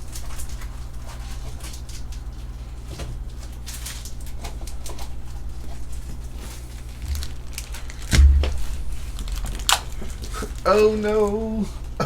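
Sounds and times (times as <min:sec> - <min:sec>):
steady low hum: 0:06.4 - 0:12.0.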